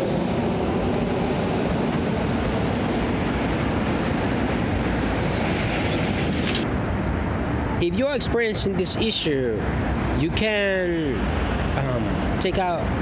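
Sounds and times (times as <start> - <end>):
wind on microphone: 0.0 - 7.8
street traffic: 0.0 - 13.0.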